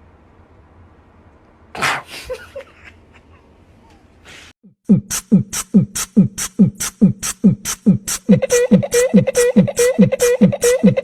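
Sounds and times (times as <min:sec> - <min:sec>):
hissing hi-hat hits: 0:04.9 - 0:10.8.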